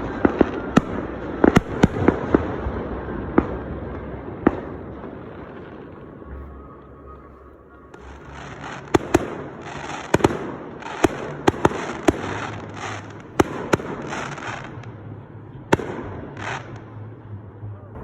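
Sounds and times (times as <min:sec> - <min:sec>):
fireworks bangs: 0:00.0 - 0:18.0
fireworks hiss: 0:08.0 - 0:14.9.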